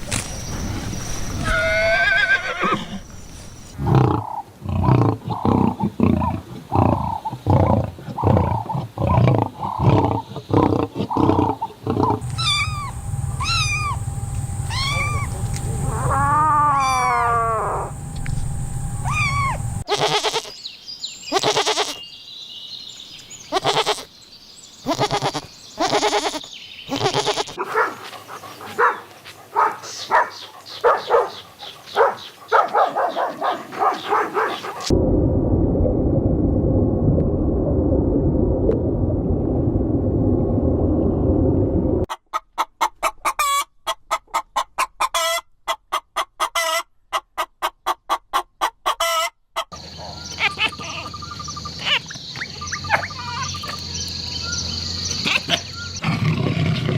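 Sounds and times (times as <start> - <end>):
pitched animal calls: 1.4 - 3.2, 9.5 - 14.0, 14.6 - 18.0, 19.0 - 20.5, 23.5 - 24.1, 24.8 - 27.6, 49.0 - 53.9
animal grunting pulses: 55.2 - 56.9.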